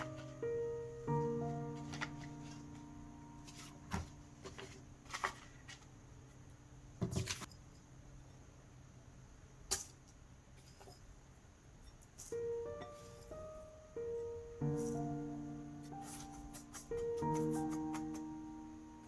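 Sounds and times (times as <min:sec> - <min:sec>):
held piano notes: 0:00.0 - 0:05.1, 0:12.3 - 0:19.0.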